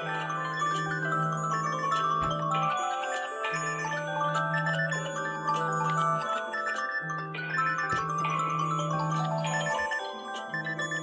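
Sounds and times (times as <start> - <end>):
phone alarm tones chiming: 0.0 - 11.0.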